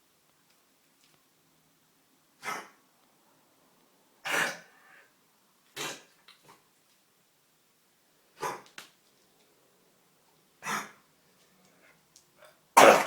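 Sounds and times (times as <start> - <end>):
dog coughing: 4.2 - 4.7, 5.8 - 6.1, 10.6 - 11.0, 12.8 - 13.0.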